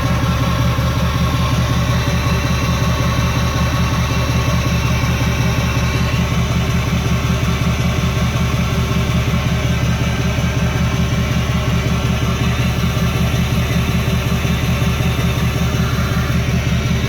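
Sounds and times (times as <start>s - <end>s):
diesel engine idling: 0.0s - 17.0s.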